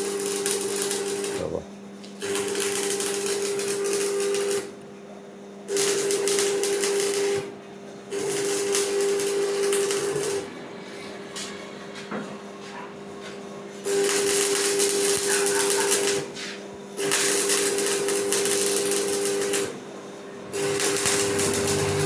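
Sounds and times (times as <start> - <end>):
welding arc crackling: 0.0 - 1.6, 2.2 - 4.7, 5.7 - 7.5, 8.1 - 10.5, 13.9 - 16.3, 17.0 - 19.8, 20.5 - 22.0
steady electrical hum: 0.0 - 22.0.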